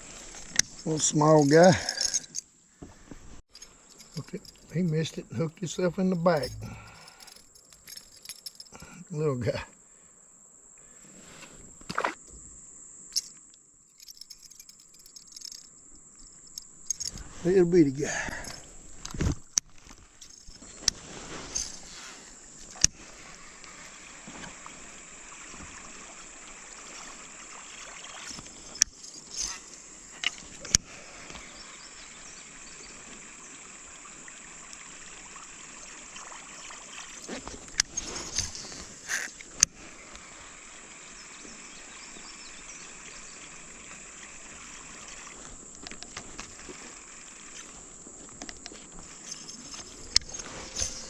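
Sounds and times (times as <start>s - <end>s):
river water trickling and lapping: 0.0s - 2.5s, 3.5s - 8.8s, 14.0s - 51.0s
high-pitched hiss: 0.0s - 36.0s, 36.8s - 51.0s.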